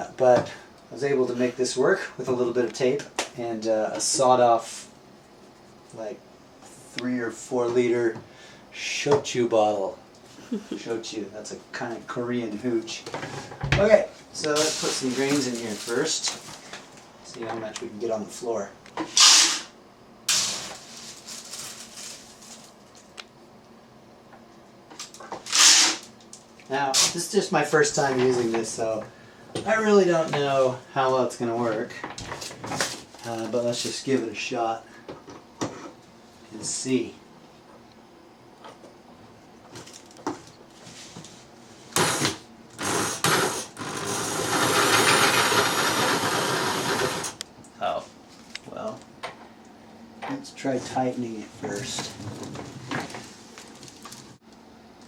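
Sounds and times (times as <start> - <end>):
power drill turning grain mill: 42.0 - 47.4.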